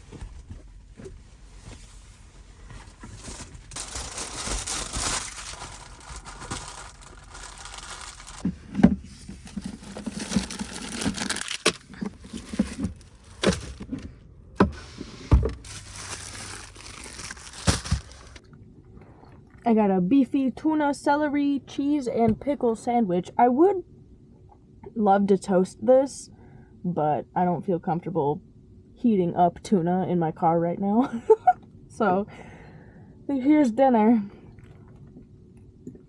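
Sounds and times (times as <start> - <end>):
plastic packaging crinkling: 2.8 - 14.0, 14.6 - 18.4.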